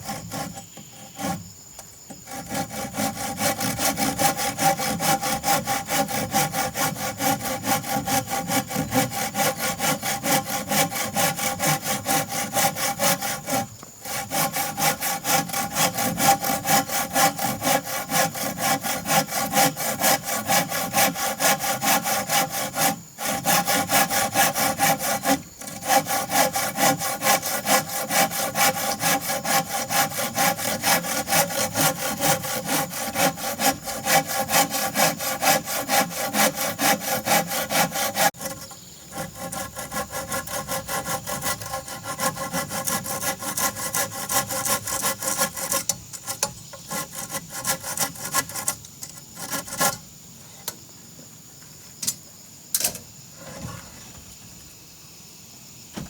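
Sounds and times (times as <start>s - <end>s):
hand saw cutting wood: 0.0s - 1.5s, 2.1s - 50.0s.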